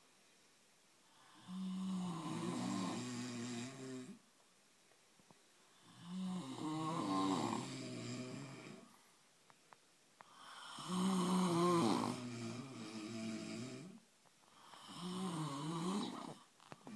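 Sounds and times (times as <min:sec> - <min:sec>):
men snoring: 0:01.1 - 0:04.2, 0:05.8 - 0:08.9, 0:10.3 - 0:14.0, 0:14.6 - 0:16.9.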